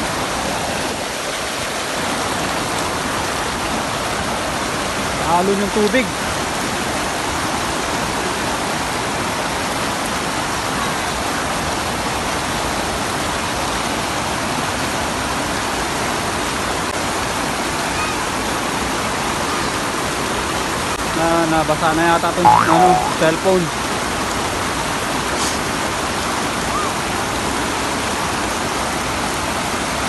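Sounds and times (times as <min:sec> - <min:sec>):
waterfall rushing: 0:00.0 - 0:12.6.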